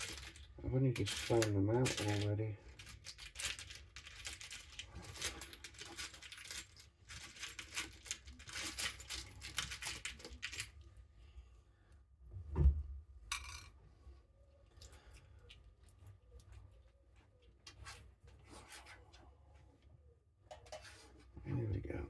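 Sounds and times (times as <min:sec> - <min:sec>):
metal screws clinking and rattling: 0:00.0 - 0:10.8.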